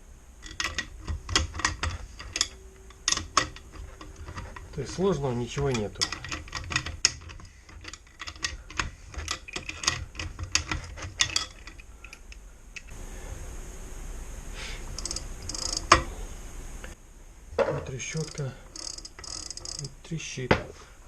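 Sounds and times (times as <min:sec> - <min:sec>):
bicycle freewheel clicking: 0:15.0 - 0:16.0, 0:18.2 - 0:19.9.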